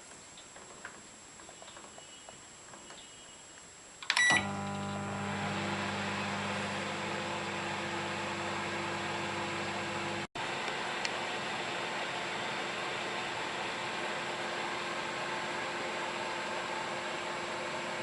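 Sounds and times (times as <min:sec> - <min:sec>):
microwave beep: 0:04.1 - 0:10.2
microwave humming: 0:04.2 - 0:18.0.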